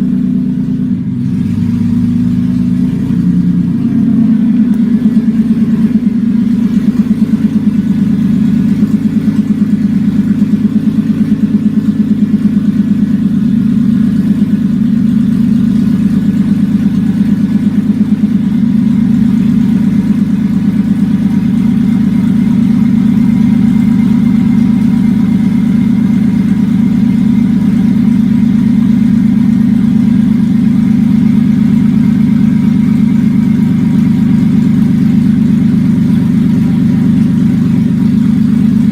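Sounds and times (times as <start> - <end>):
unmuffled car engine idling: 0.0 - 38.9.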